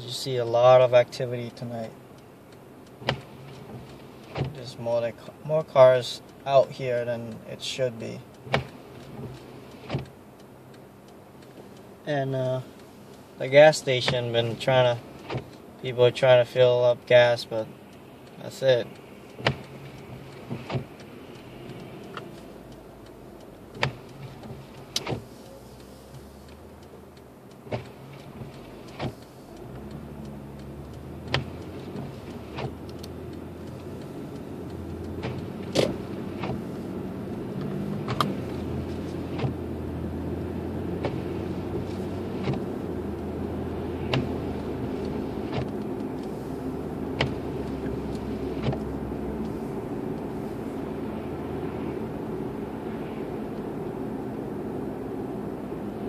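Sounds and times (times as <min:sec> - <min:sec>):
car engine hum and road noise: 0:00.0 - 0:56.0
sharp clicks: 0:17.9 - 0:39.9, 0:40.9 - 0:50.3.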